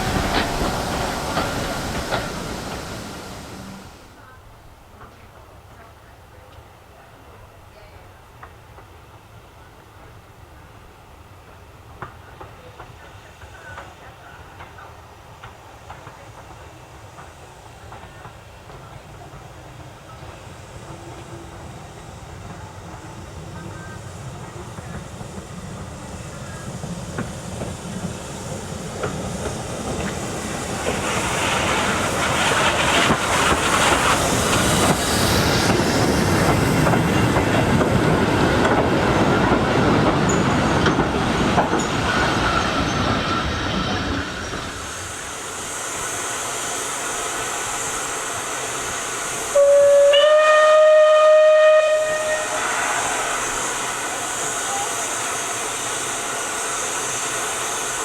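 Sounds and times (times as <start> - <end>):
steam train passing: 0.0 - 58.0
steam locomotive whistle blast: 49.3 - 57.2.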